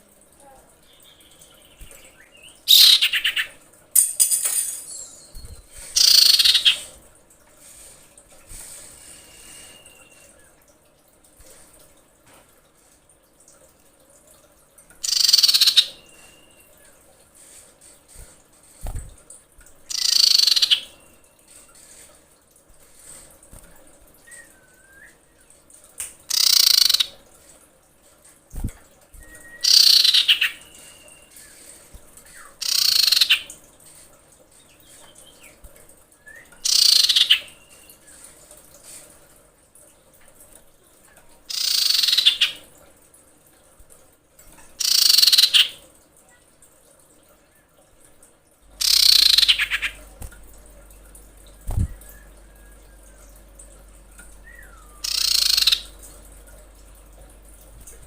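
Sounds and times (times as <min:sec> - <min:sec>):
bird harsh rasping call: 0:02.7 - 0:03.5
faint thin bird whistles: 0:24.2 - 0:25.2, 0:54.4 - 0:55.3.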